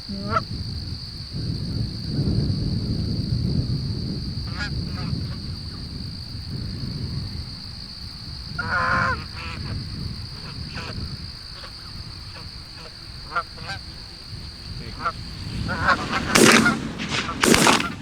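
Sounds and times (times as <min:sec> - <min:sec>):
high insect drone: 0:00.0 - 0:18.0
low wind rumble: 0:00.0 - 0:18.0
geese honking: 0:08.6 - 0:18.0.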